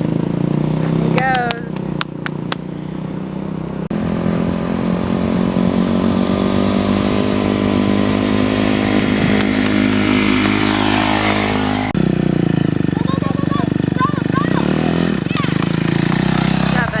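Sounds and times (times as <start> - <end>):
dirt bike engine running: 0.0 - 17.0.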